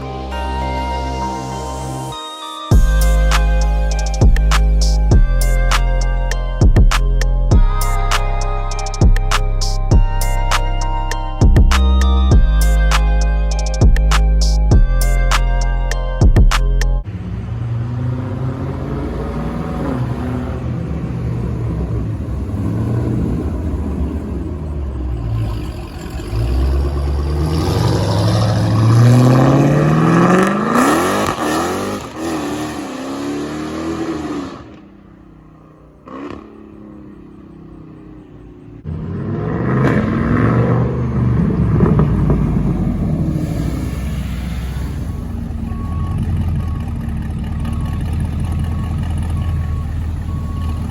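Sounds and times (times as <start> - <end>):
car engines rumbling and revving: 0.0 - 50.9
car accelerating hard: 17.1 - 35.1, 36.0 - 37.9, 38.9 - 49.4.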